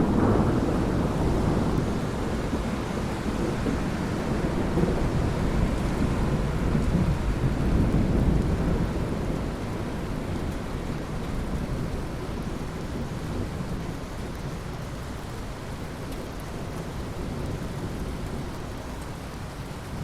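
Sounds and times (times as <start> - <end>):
low thunder rumbling: 0.0 - 14.0
steady rain: 0.0 - 20.0.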